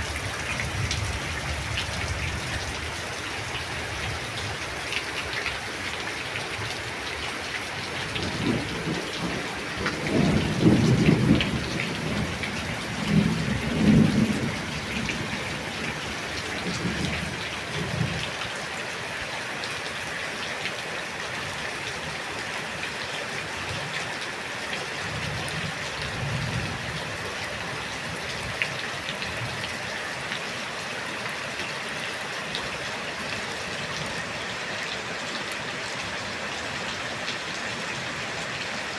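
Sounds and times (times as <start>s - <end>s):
steady rain: 0.0s - 38.9s
thunder rumbles: 8.2s - 18.1s.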